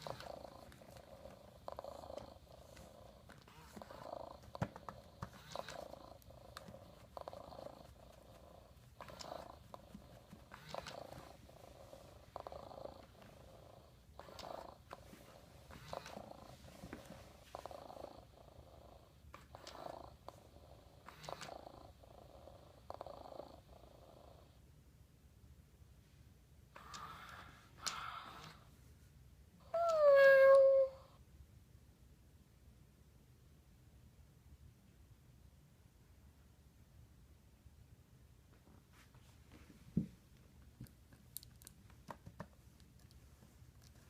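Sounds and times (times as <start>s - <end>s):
electronic cat purring: 0.0s - 24.6s, 26.7s - 28.6s.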